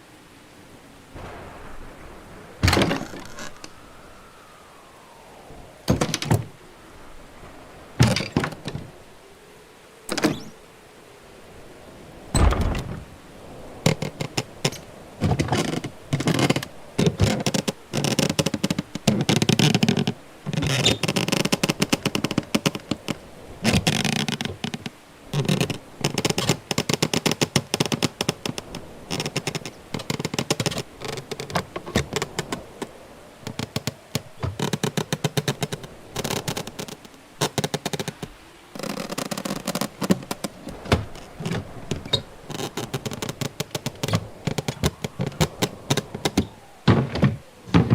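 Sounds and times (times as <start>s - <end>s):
door latches clicking and rattling: 10.1s - 10.5s, 12.4s - 13.0s.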